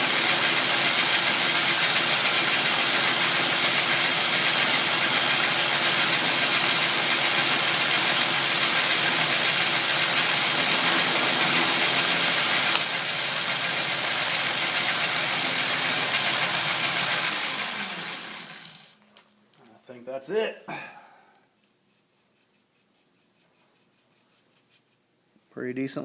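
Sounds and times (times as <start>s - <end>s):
lathe cutting steel: 0.0s - 18.9s.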